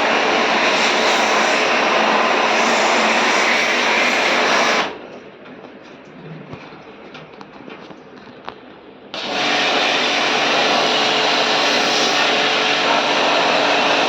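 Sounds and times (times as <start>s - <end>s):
pressure washer spraying water: 0.0s - 5.0s, 9.2s - 14.0s.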